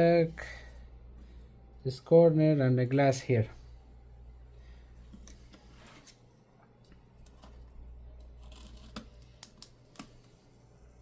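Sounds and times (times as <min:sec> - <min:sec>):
rubbing and scraping on tablet: 0:05.2 - 0:06.2.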